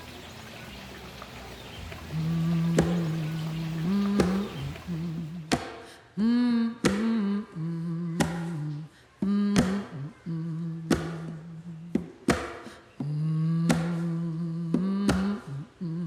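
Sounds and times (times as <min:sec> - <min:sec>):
woman humming a slow melody: 0:02.0 - 0:05.5, 0:06.2 - 0:12.0, 0:13.0 - 0:16.0.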